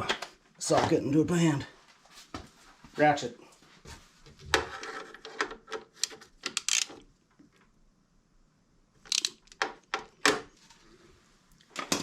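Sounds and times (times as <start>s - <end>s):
socket ratchet clicking: 6.4s - 7.0s, 9.1s - 9.8s.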